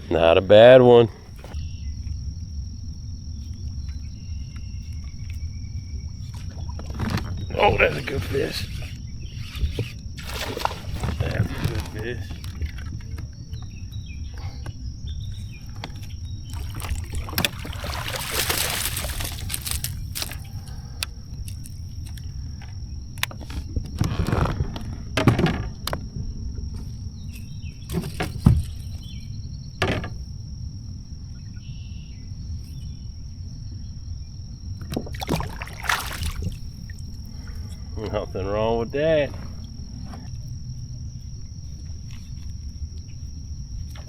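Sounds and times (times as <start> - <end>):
high-pitched insect drone: 1.4 - 6.8, 7.4 - 24.1, 26.5 - 43.8
water splashing: 10.2 - 12.8, 16.5 - 21.7, 35.0 - 37.5.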